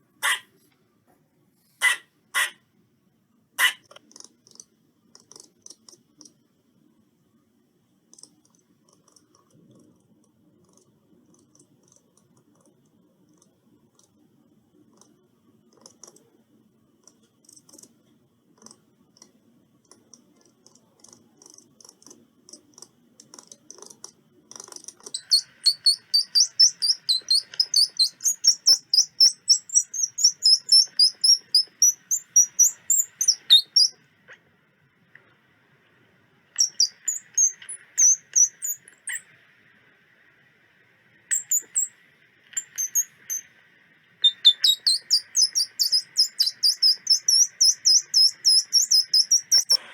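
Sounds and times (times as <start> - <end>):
faint clicks: 3.8 - 6.4, 8.1 - 16.4, 17.0 - 36.0, 36.6 - 39.5, 41.3 - 49.8
squirrel chirping: 23.3 - 34.0, 36.6 - 39.4, 41.3 - 43.5, 44.2 - 49.8.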